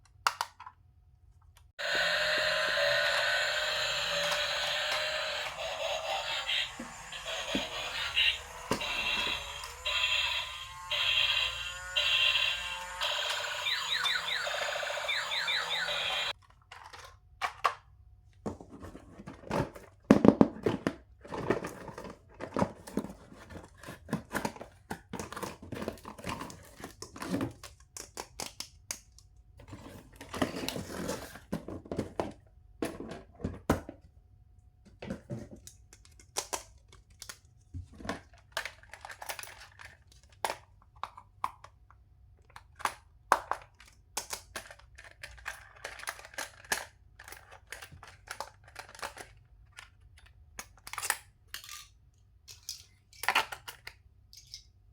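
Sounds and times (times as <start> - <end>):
toy packaging crinkling and tearing: 1.8 - 15.5, 16.2 - 17.7, 35.6 - 54.0.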